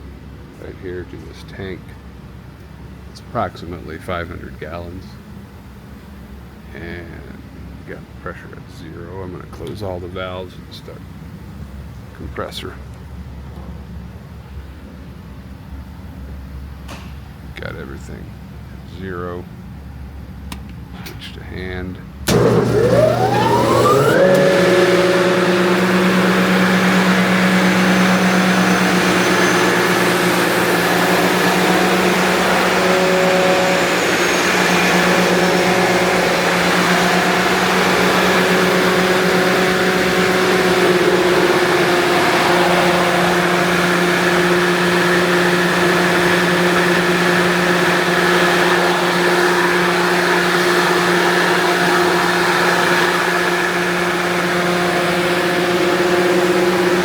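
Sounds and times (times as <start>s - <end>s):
air compressor humming: 22.2s - 57.0s.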